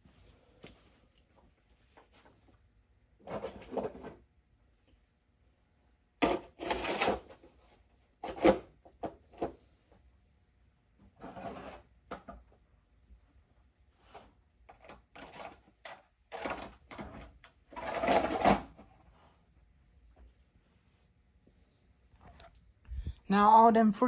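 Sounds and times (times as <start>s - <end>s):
objects scraping and rubbing: 11.2s - 11.9s.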